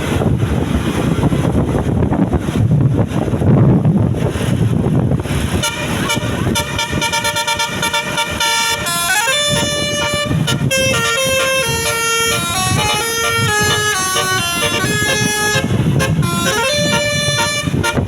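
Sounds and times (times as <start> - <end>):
wind and traffic rumble: 0.0 - 18.0
bus multi-tone air horn melody: 5.5 - 18.0.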